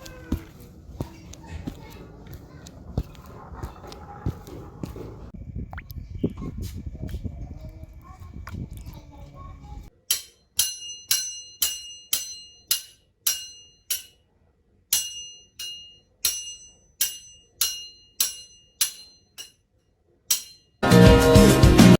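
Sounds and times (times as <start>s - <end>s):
small bell ringing: 15.0s - 19.6s.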